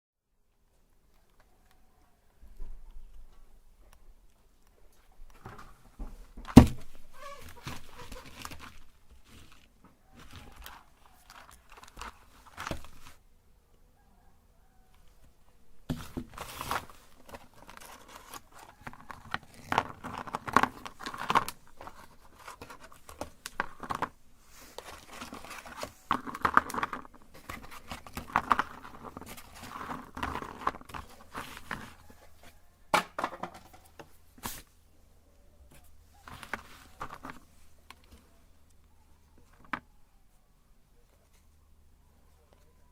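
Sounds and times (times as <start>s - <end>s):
cookies crunching in a grinder: 16.4s - 24.2s, 24.8s - 32.1s.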